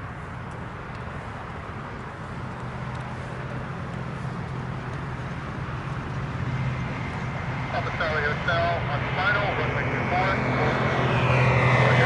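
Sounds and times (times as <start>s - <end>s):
propeller aircraft engine droning: 0.0s - 12.0s.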